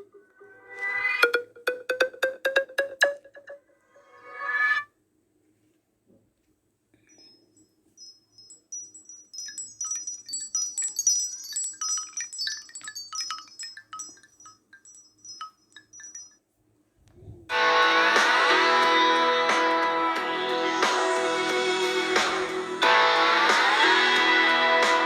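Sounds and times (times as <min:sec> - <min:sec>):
tinkling ringtone: 0:07.0 - 0:16.5.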